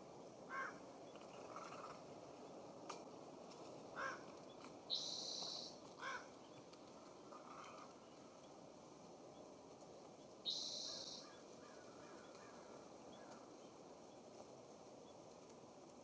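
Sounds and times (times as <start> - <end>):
faint outdoor background noise: 0.0 - 16.0
harsh raspy bird call: 4.0 - 4.3, 4.9 - 6.3.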